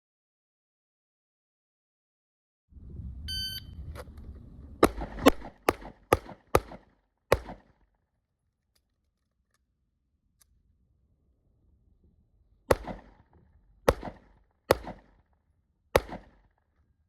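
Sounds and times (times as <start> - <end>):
shot timer beep: 3.3 - 3.8
pistol shots: 4.8 - 7.8, 12.7 - 13.3, 13.9 - 15.2, 16.0 - 16.5.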